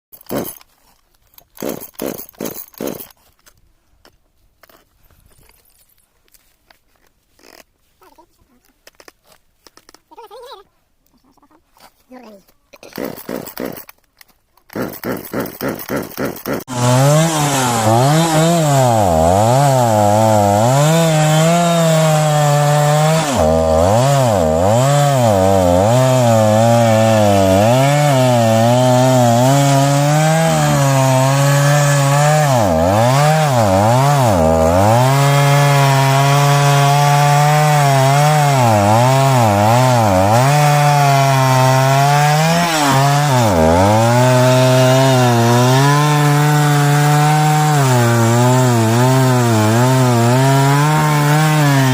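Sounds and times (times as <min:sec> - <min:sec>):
chainsaw cutting wood: 0:00.1 - 0:00.8, 0:01.4 - 0:03.2, 0:12.8 - 0:51.9.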